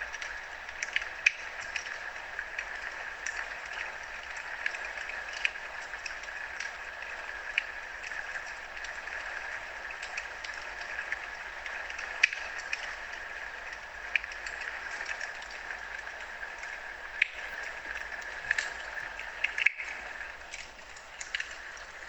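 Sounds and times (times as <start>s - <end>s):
wood fire crackling: 14.1s - 22.0s.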